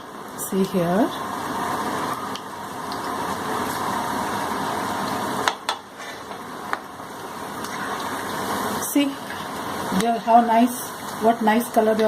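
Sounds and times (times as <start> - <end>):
food deep-frying in hot oil: 0.0 - 12.0.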